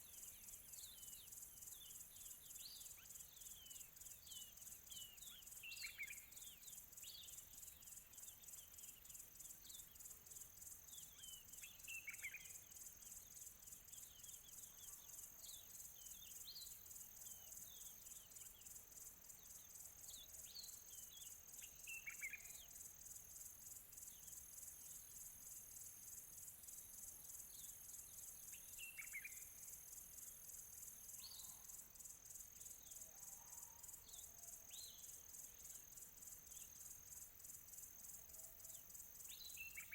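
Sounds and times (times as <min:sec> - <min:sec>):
insect trill: 0:00.0 - 0:39.9.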